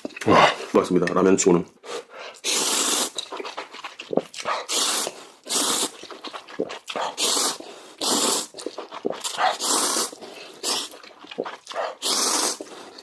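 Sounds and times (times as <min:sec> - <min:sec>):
slurping noodles through lips: 0:01.9 - 0:13.0
quiet chewing: 0:03.0 - 0:13.0.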